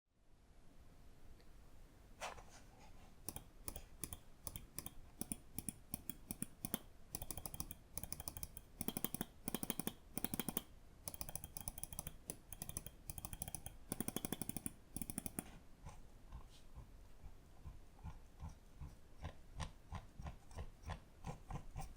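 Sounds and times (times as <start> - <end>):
mouse buttons clicking: 3.2 - 15.5.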